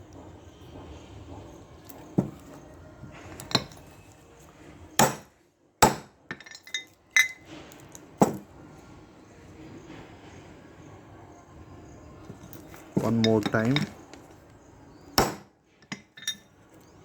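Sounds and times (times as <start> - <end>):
metal tools knocking: 0.1 - 4.2, 6.3 - 7.5, 12.3 - 14.5, 15.2 - 16.6.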